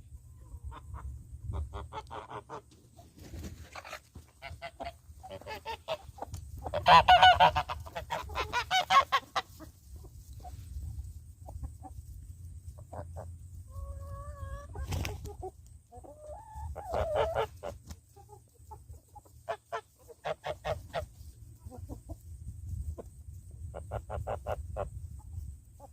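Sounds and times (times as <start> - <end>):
chickens clucking: 0.0 - 25.9
geese honking: 4.3 - 9.7, 16.8 - 17.8, 19.3 - 21.9.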